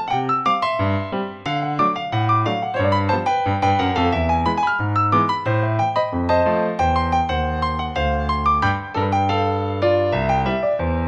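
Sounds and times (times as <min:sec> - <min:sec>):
piano background music: 0:00.0 - 0:11.0.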